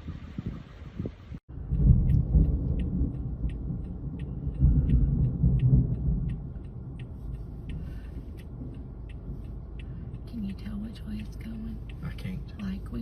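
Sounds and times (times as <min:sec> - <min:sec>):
wind buffeting microphone: 0:00.0 - 0:13.0
light ticking: 0:01.6 - 0:13.0.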